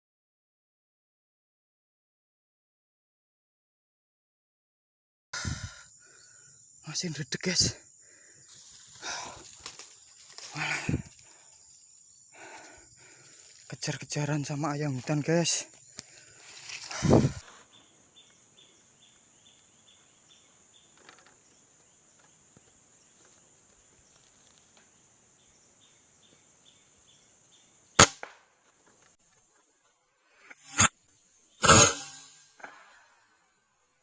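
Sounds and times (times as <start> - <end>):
high insect drone: 5.4 - 33.7
rapid insect chirping: 5.4 - 34.0
air rifle shots: 28.0 - 28.4, 31.6 - 32.3.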